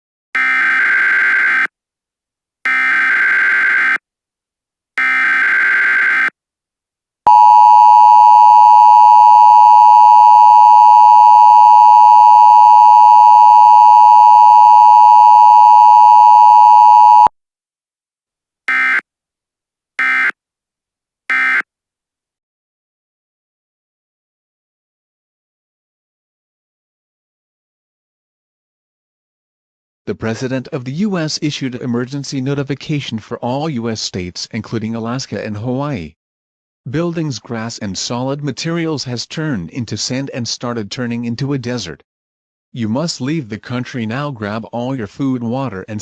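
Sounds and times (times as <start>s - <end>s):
two-tone attention signal: 7.3s - 17.3s.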